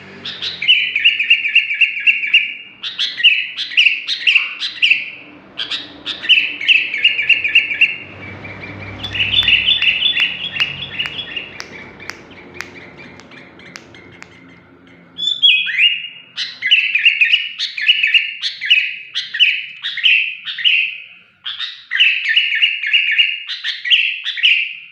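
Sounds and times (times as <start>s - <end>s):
bird singing shrill chirps: 0.2s - 24.6s
low background rumble: 4.7s - 16.6s.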